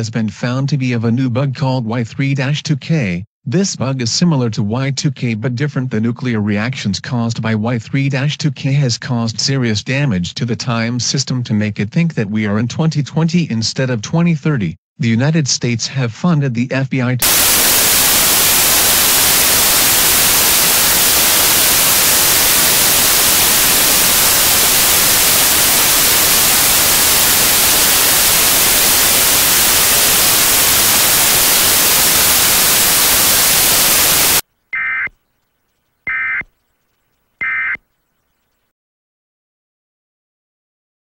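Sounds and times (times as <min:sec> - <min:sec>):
static hiss: 0:17.2 - 0:34.4
buzzy two-tone data bursts: 0:17.2 - 0:35.1, 0:36.0 - 0:36.5, 0:37.4 - 0:37.8.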